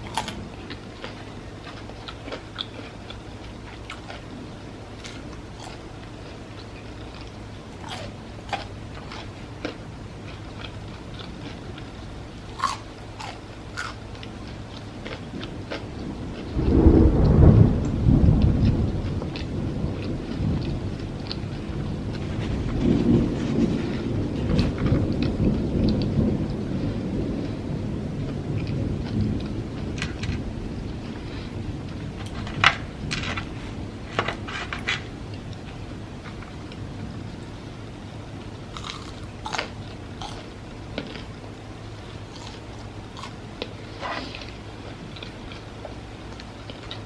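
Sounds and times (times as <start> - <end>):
close-miked chewing: 0.0 - 16.8, 18.4 - 26.6, 38.3 - 47.0
low steady hum: 0.0 - 47.0.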